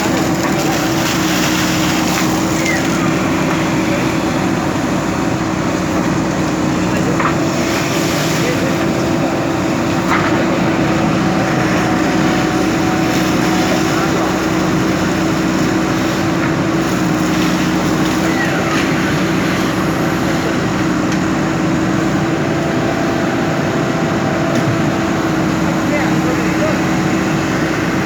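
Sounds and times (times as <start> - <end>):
diesel engine running: 0.0 - 28.0.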